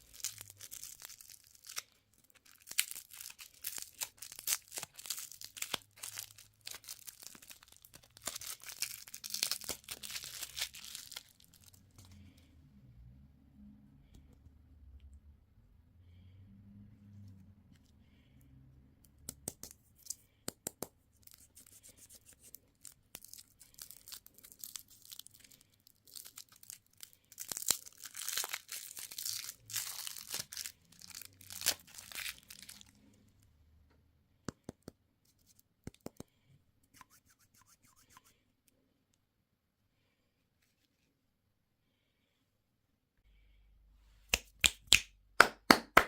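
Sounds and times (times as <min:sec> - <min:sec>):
candy wrapper crinkling: 0:00.0 - 0:12.1, 0:22.7 - 0:33.0.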